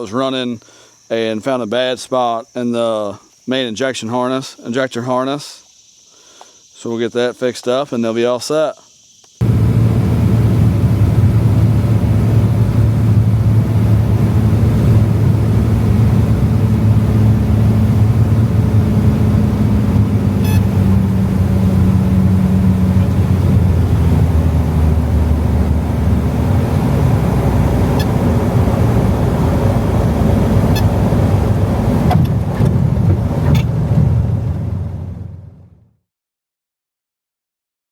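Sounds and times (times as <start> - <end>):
large engine humming: 9.4 - 35.8.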